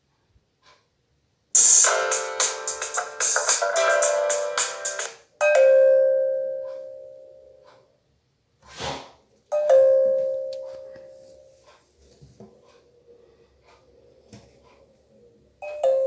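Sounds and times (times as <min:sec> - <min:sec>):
electronic ringtone melody: 0:01.6 - 0:07.2.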